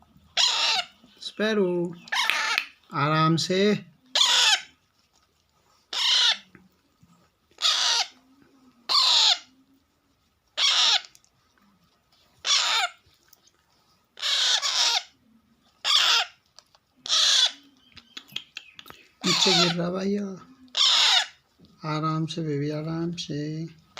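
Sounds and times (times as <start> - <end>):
parakeet chicks squawking: 0.3 - 1.0, 2.0 - 4.8, 5.9 - 6.5, 7.6 - 8.2, 8.8 - 9.6, 10.5 - 11.2, 12.4 - 13.0, 14.2 - 15.2, 15.8 - 16.4, 17.0 - 22.0.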